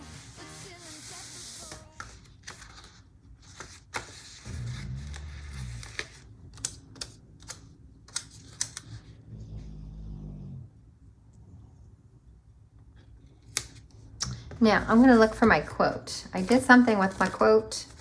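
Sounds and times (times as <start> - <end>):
paper rustling: 0.0 - 9.0, 16.3 - 18.0
stickers peeled and pressed: 2.0 - 9.0.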